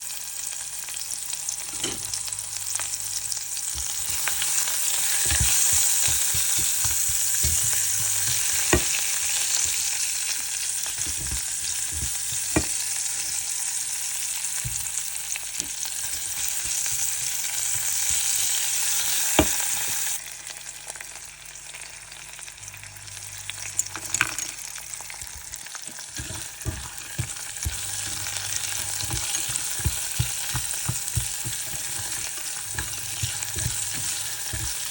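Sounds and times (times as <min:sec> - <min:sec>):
food sizzling in hot oil: 0:00.0 - 0:34.9
spatula knocking against pan: 0:11.0 - 0:12.8, 0:26.2 - 0:34.9.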